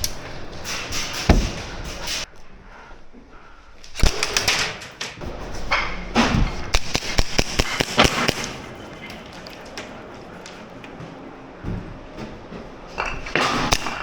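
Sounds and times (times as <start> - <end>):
airsoft guns firing: 3.9 - 4.7, 6.7 - 8.6.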